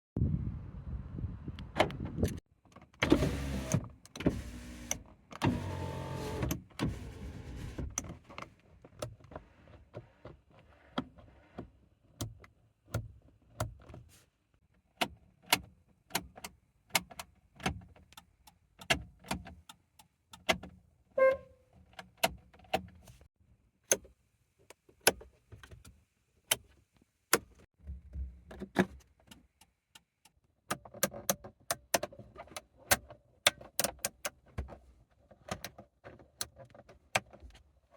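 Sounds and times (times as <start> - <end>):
electric window motor: 3.1 - 7.8.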